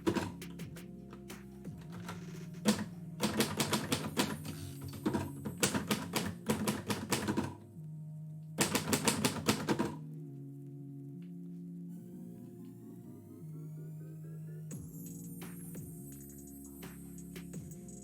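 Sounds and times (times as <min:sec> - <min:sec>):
typewriter keystrokes: 0:02.0 - 0:07.6, 0:08.6 - 0:10.0.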